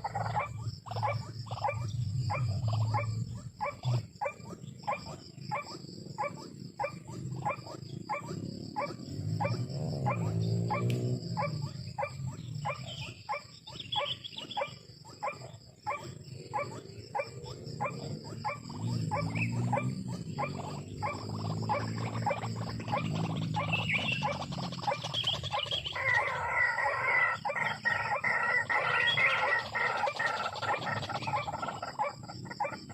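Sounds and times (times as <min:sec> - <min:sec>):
bird deep grunting calls: 0:00.0 - 0:32.9
bird repeated short calls: 0:00.0 - 0:32.9
loud high bird call: 0:20.3 - 0:31.8.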